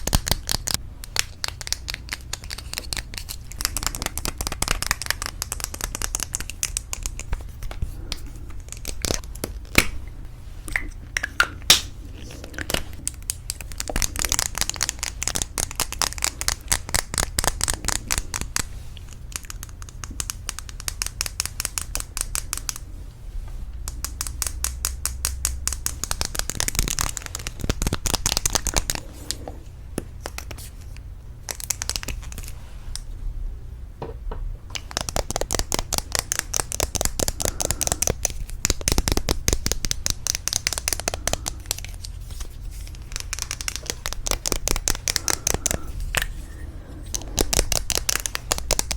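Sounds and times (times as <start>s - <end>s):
rapid tapping on lipstick cases: 0.0s - 7.8s, 13.0s - 18.7s, 19.3s - 22.8s, 23.8s - 29.1s, 34.7s - 42.0s, 42.8s - 45.9s, 47.1s - 48.9s.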